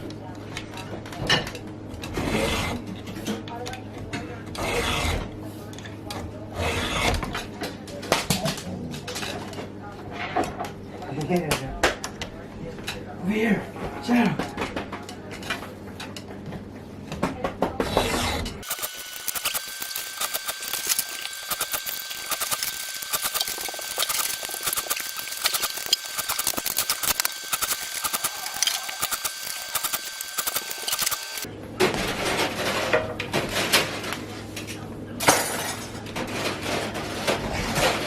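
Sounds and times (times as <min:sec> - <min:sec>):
file rasping on chainsaw teeth: 0:04.6 - 0:05.2, 0:06.6 - 0:07.2.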